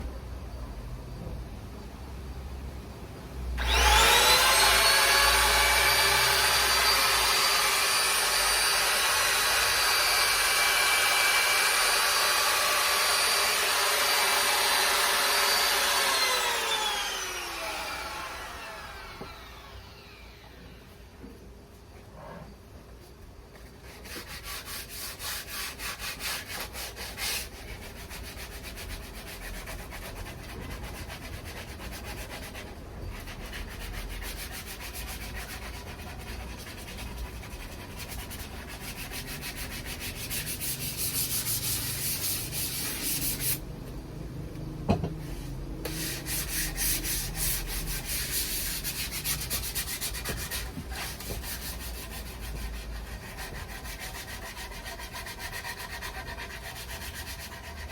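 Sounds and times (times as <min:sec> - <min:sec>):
sandpaper scraping on wood: 0:23.8 - 0:43.6, 0:45.9 - 0:57.9.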